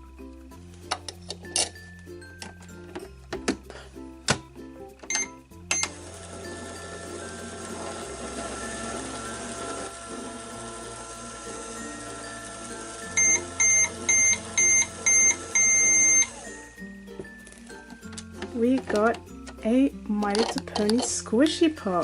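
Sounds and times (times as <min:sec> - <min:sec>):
background music: 0:00.0 - 0:22.0
microwave beeps: 0:05.1 - 0:06.0, 0:12.2 - 0:16.7.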